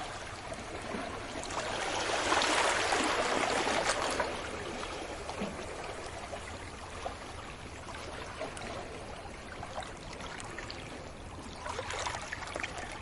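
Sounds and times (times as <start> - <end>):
sea waves washing onto beach: 0.0 - 6.4.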